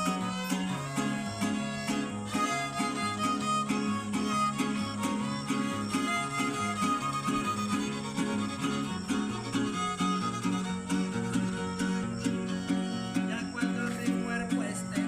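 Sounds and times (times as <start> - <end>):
violin melody: 0.0 - 14.5
strummed guitars: 0.0 - 15.0.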